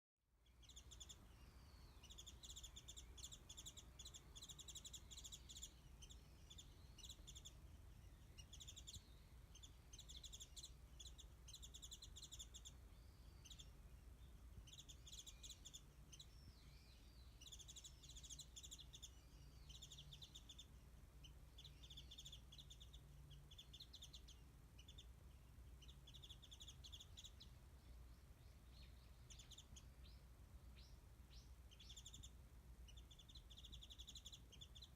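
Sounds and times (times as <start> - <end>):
bird twittering: 0.6 - 13.8, 14.6 - 25.1, 25.8 - 27.6, 28.7 - 30.2, 30.8 - 34.9.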